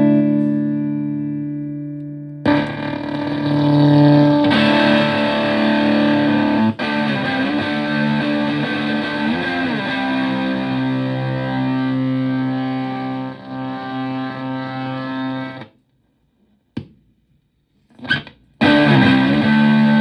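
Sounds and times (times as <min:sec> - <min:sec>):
distorted fuzz electric guitar: 0:02.4 - 0:15.7, 0:18.6 - 0:20.0.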